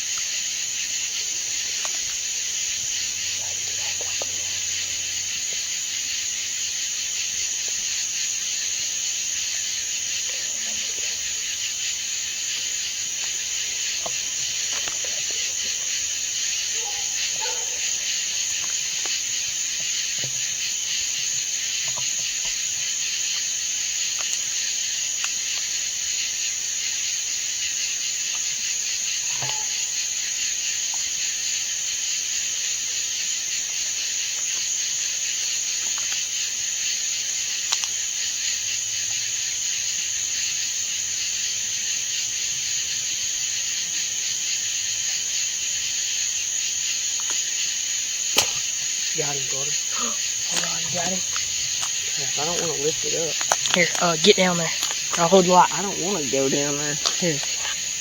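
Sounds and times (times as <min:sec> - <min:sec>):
night insects chirping: 0:00.0 - 0:58.0
faint clicks and rustles: 0:48.4 - 0:57.9.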